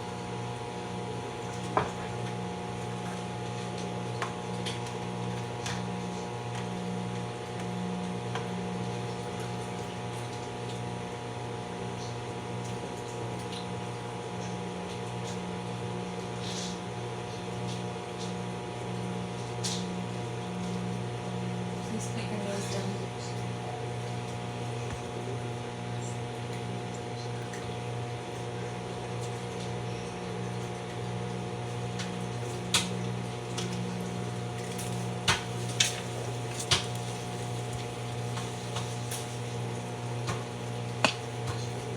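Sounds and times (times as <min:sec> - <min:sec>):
microwave oven humming: 0:00.0 - 0:41.9
popcorn popping: 0:34.9 - 0:41.9.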